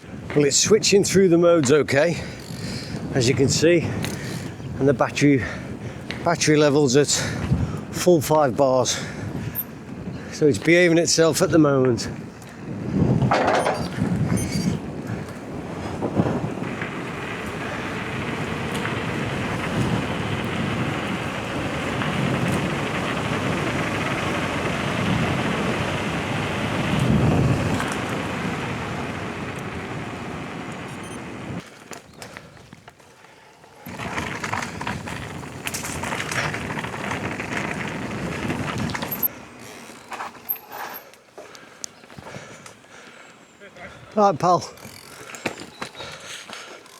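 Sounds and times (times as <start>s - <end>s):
bike tyres rumbling on trail: 0.0s - 46.9s
wind on microphone: 2.2s - 6.4s, 7.2s - 8.3s, 8.9s - 10.7s, 11.3s - 31.6s.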